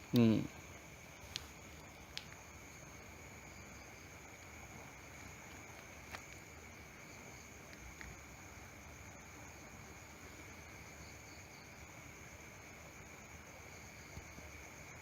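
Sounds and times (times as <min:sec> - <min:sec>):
night insects chirring: 0:00.0 - 0:15.0
faint clicks: 0:01.3 - 0:02.4.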